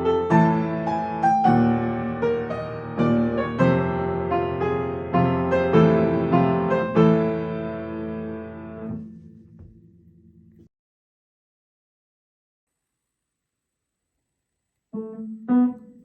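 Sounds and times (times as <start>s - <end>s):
slow piano melody: 0.0s - 10.4s, 15.0s - 16.0s.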